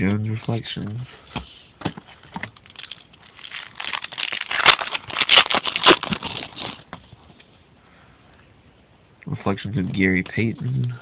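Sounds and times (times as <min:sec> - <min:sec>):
trading cards rustling: 0:02.6 - 0:06.8.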